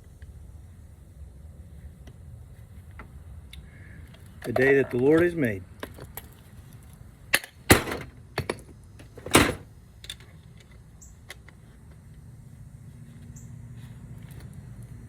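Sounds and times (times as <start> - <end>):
low steady hum: 0.0 - 15.0
metal clanking: 7.4 - 8.6, 9.2 - 9.7.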